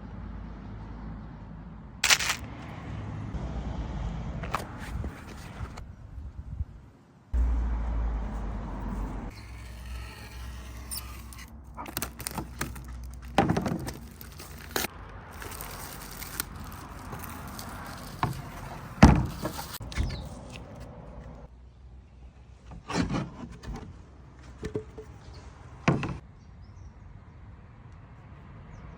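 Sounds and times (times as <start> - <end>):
rustling: 9.3 - 19.9.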